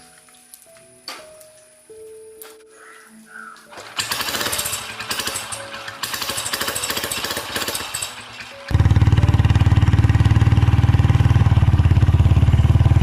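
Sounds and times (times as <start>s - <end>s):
motorcycle engine running: 4.0s - 13.0s.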